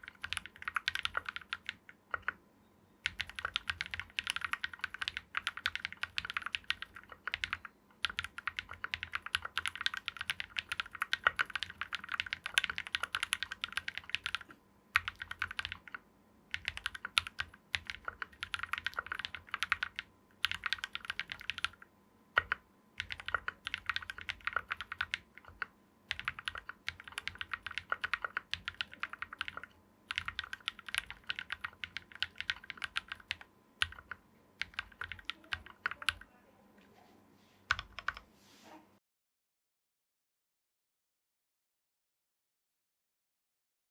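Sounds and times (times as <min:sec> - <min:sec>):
mechanical keyboard typing: 0:00.0 - 0:02.4, 0:03.0 - 0:36.3, 0:37.7 - 0:38.2.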